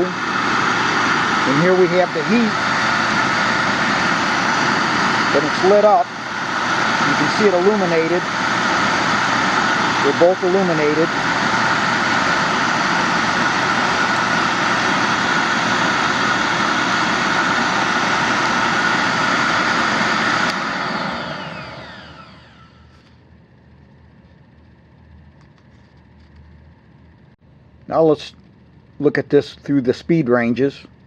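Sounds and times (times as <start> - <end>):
dryer blower rushing air: 0.0 - 23.6
blower whine winding down: 0.0 - 31.0.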